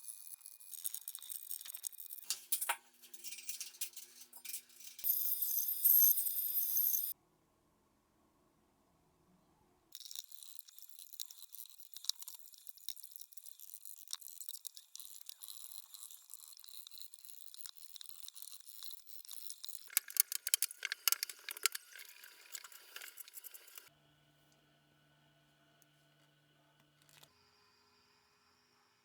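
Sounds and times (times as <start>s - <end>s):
scrubbing tile grout: 15.8s - 23.9s.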